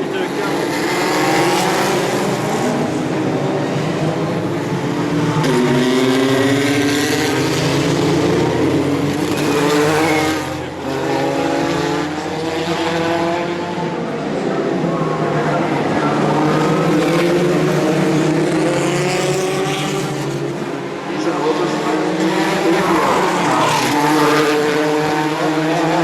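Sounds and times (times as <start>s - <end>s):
race car engines revving: 0.0s - 26.0s.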